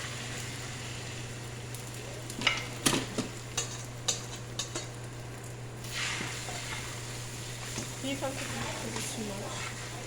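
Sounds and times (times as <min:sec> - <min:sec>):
utensil scraping a pan: 0:07.6 - 0:10.0.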